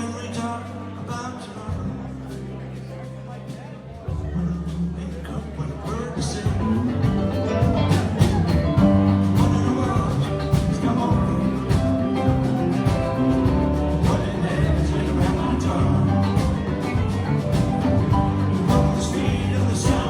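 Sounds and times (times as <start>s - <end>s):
live rock band playing: 0.0s - 20.0s
steady drum beat: 6.4s - 20.0s.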